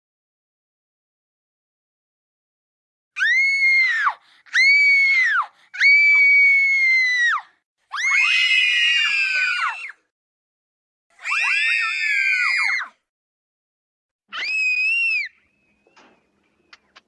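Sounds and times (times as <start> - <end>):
children screaming: 3.2 - 10.0, 11.2 - 13.0, 14.3 - 15.4.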